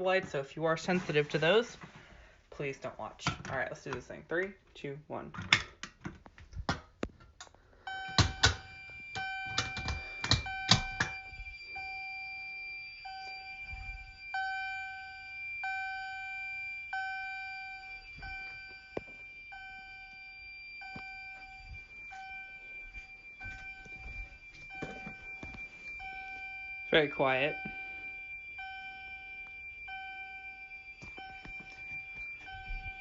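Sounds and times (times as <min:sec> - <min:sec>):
fire alarm chime: 0:07.8 - 0:33.0
steady high-pitched tone: 0:07.9 - 0:33.0.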